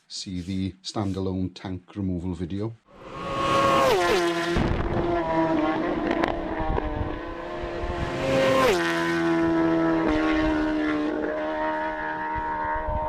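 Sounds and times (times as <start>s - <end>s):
motorcycle engine at high revs: 3.0s - 13.0s.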